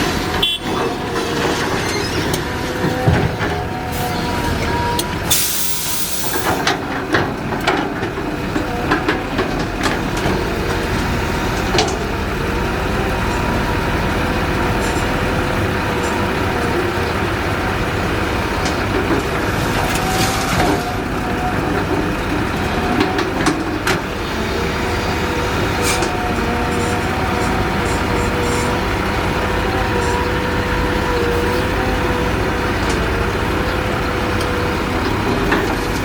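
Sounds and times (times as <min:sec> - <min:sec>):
excavator engine drone: 0:00.0 - 0:36.0.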